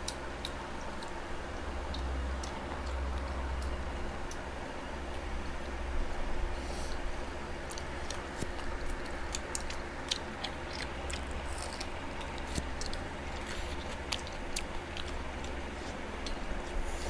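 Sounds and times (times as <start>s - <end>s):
chewing and biting: 7.5s - 17.0s.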